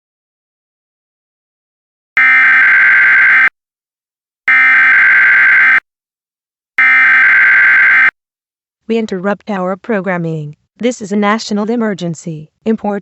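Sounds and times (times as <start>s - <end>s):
buzzy digital data tones: 2.2s - 3.5s.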